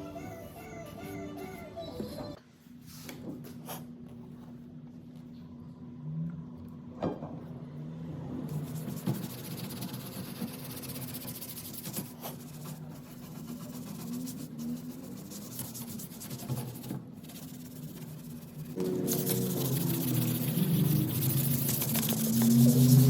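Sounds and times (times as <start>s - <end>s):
scratchy rubbing on wood: 8.6s - 23.0s
low hum: 17.6s - 23.0s.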